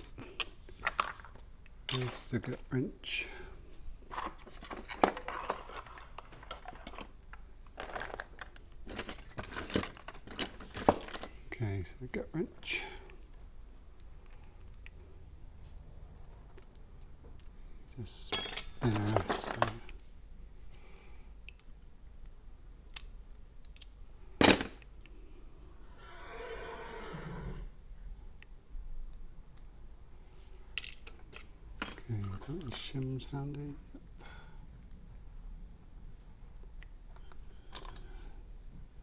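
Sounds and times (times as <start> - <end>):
metal lock tools clinking: 4.2 - 11.6, 18.4 - 20.0, 30.8 - 33.0.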